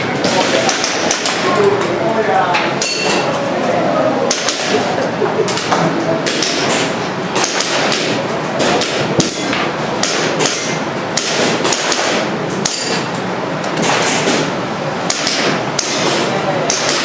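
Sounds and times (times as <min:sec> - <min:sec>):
airsoft pistol shots: 0:11.2 - 0:12.3.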